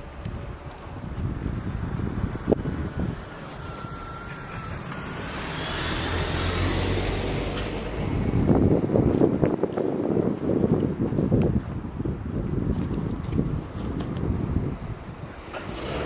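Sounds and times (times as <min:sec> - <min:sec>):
wind gusts on microphone: 0:00.0 - 0:16.0
electric train passing: 0:01.7 - 0:08.6.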